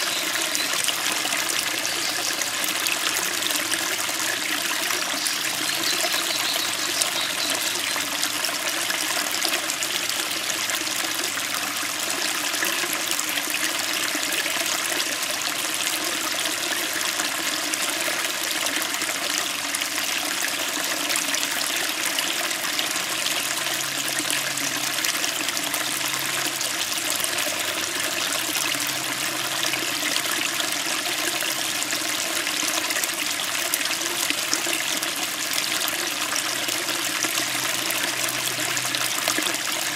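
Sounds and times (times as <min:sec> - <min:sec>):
stream splashing over rocks: 0:00.0 - 0:39.9.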